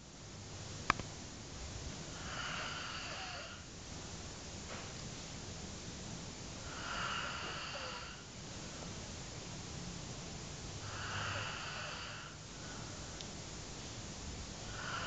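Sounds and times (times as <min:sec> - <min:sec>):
sharp click: 0:00.8 - 0:01.1
man snoring: 0:02.2 - 0:03.7, 0:06.6 - 0:08.3, 0:10.8 - 0:12.4, 0:14.7 - 0:15.0.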